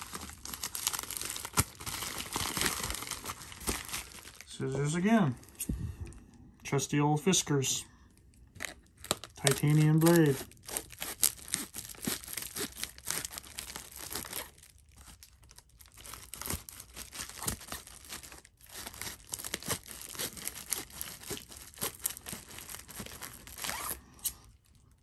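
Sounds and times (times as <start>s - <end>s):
scissors cutting packaging: 0.0s - 4.1s, 9.0s - 14.5s, 16.0s - 24.4s
packaging crinkling and tearing: 0.0s - 5.5s, 8.5s - 24.9s.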